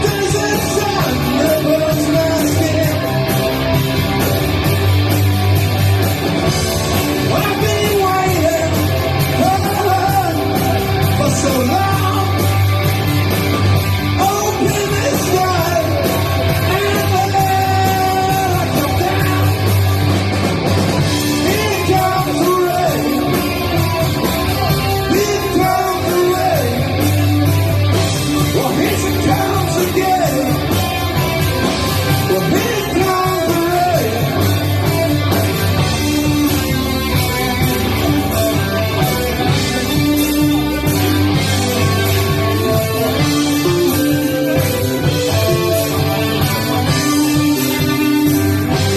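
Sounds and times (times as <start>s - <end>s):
singer shouting vocals: 0.0s - 3.2s, 7.2s - 12.6s, 14.1s - 19.7s, 21.2s - 23.6s, 24.8s - 27.1s, 28.4s - 30.7s, 32.2s - 34.5s
distorted guitars and bass: 0.0s - 48.9s.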